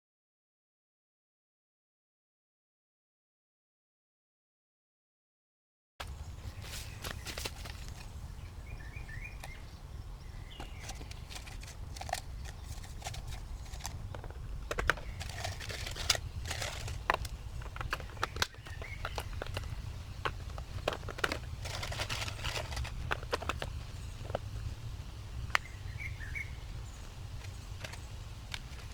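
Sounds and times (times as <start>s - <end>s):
faint bird chirps: 6.0s - 11.4s, 23.7s - 28.4s.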